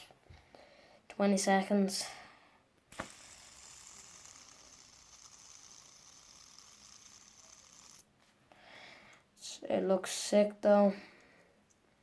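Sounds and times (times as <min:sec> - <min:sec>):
fidget spinner whirring: 0:02.9 - 0:08.1.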